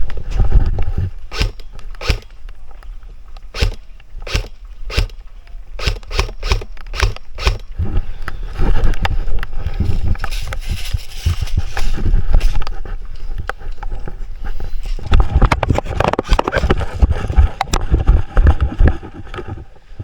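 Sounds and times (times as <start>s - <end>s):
footsteps and movement: 0.0s - 20.0s
airsoft gun shots: 1.3s - 2.4s, 3.5s - 5.2s, 5.8s - 7.7s.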